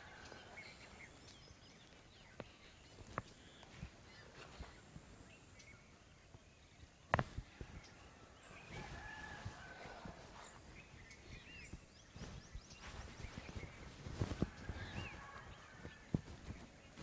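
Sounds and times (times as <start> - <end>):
small birds chirping: 0.0 - 17.0
hands rubbing and patting head: 7.1 - 8.0, 8.6 - 17.0.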